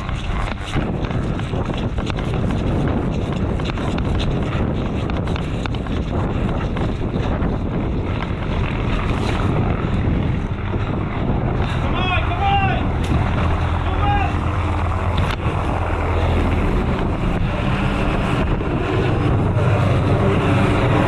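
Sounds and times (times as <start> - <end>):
gear knocking and rattling: 0.0 - 9.5
wind rumble on microphone: 0.0 - 21.0.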